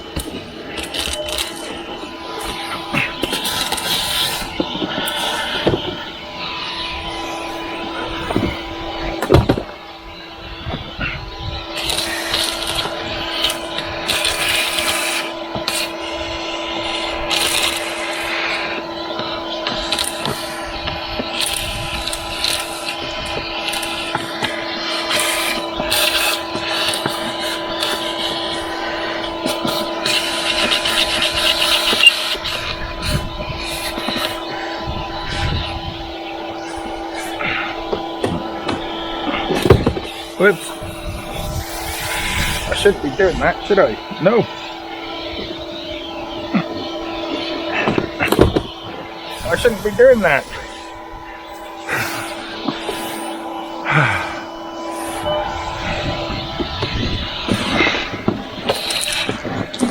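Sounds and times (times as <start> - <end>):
nozzle scraping and clicking: 0.0 - 59.9
vacuum cleaner running: 0.0 - 59.9.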